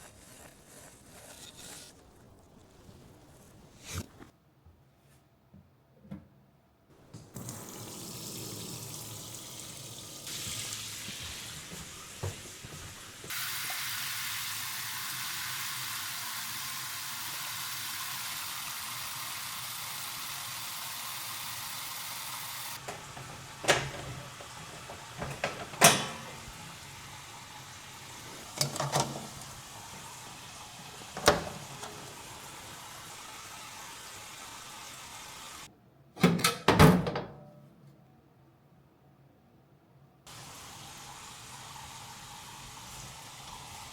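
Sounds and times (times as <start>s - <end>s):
water running from a tap: 7.2s - 35.7s, 40.3s - 43.9s
parts clacking at sink: 22.8s - 26.9s, 28.4s - 29.6s, 31.0s - 32.3s.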